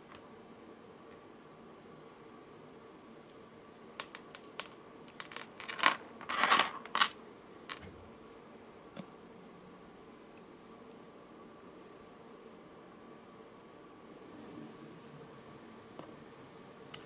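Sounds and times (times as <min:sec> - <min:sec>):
crackly rustle: 0:03.2 - 0:08.1
beads clicking: 0:04.0 - 0:07.8.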